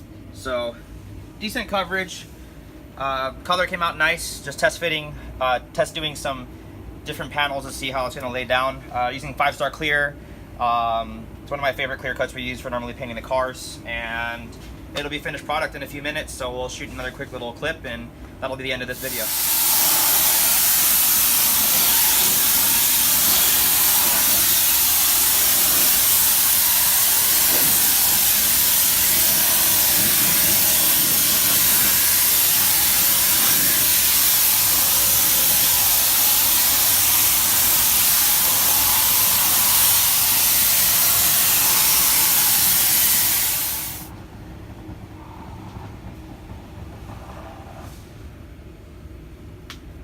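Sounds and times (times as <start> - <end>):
rushing air hiss: 18.9 - 44.1.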